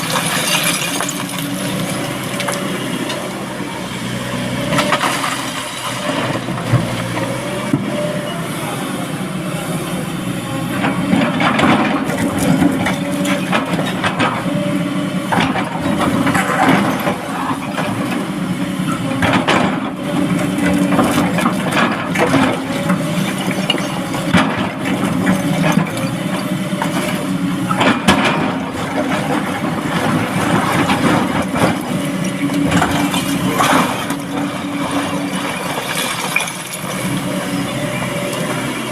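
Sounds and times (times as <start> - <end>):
diesel machinery running: 0.0 - 38.9.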